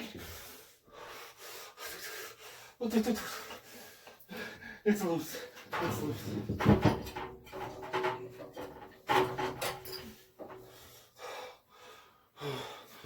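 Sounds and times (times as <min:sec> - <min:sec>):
wrench scraping on threads: 0:07.1 - 0:10.7.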